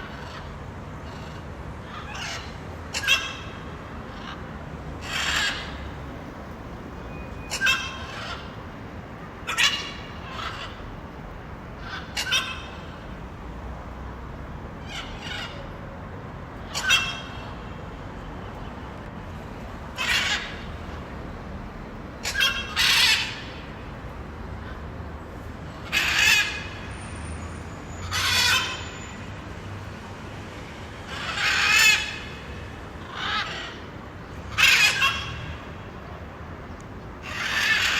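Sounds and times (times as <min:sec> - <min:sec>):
low background noise: 0:00.0 - 0:37.9
macaw squawking harshly: 0:05.0 - 0:05.8, 0:07.0 - 0:08.6, 0:09.4 - 0:10.9, 0:11.8 - 0:12.9, 0:22.2 - 0:23.5, 0:28.1 - 0:28.8, 0:31.1 - 0:32.4, 0:34.5 - 0:35.5, 0:37.2 - 0:37.9.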